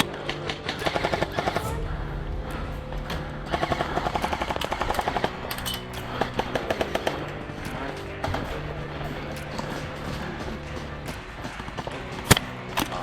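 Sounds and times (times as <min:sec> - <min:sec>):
background music: 0:00.0 - 0:13.0
automatic fire from airsoft guns: 0:03.5 - 0:13.0.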